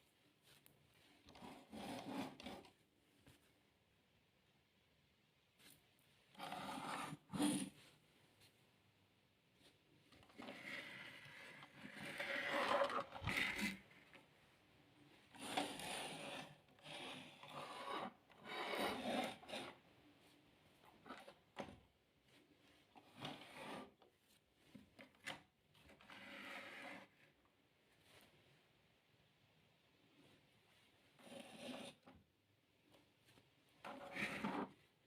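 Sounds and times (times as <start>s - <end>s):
toy packaging rubbing and scraping: 1.3s - 2.8s, 6.3s - 7.8s, 10.2s - 14.1s, 15.3s - 19.8s, 31.2s - 32.0s, 33.8s - 35.0s.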